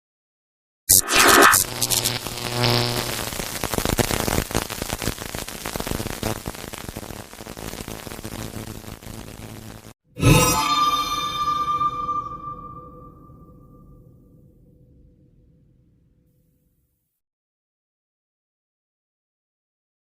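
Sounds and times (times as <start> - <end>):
crackling buzzing rumble: 0.9 - 10.0.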